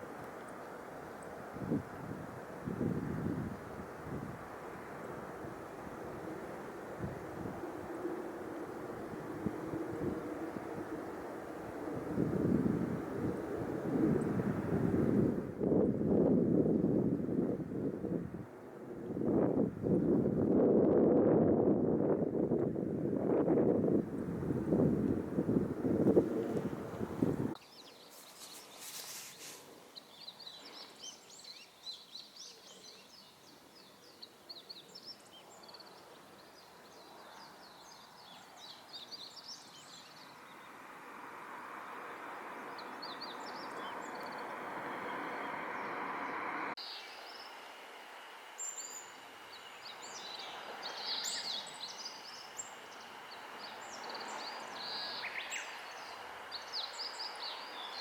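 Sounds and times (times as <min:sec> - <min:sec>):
small birds chirping: 0:25.8 - 0:40.8, 0:41.8 - 0:47.7, 0:48.6 - 0:58.0
steady rushing noise: 0:40.7 - 0:58.0.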